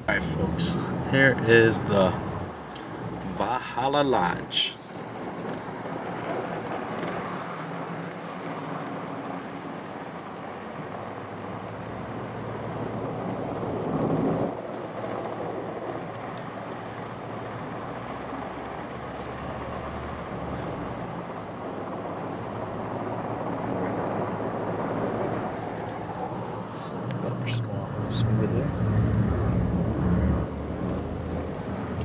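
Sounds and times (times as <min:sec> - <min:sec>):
truck engine running: 0:15.4 - 0:32.0.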